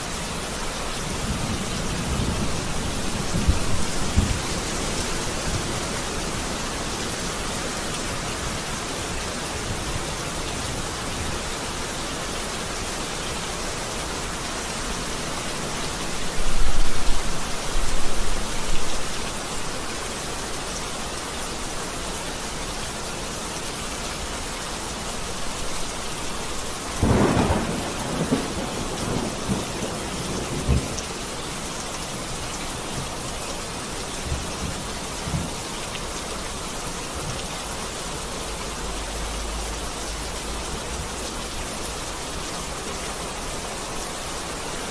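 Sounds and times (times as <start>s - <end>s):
heavy rain: 0.0s - 44.9s
thunder rumbling and cracking: 1.2s - 4.8s, 26.9s - 31.0s.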